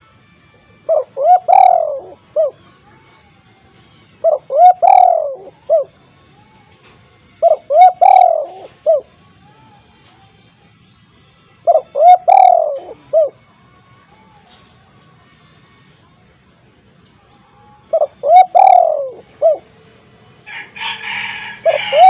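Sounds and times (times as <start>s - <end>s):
dove cooing: 0.7s - 2.8s, 4.1s - 6.0s, 7.4s - 9.1s, 11.6s - 13.4s, 17.8s - 19.7s, 20.9s - 22.0s.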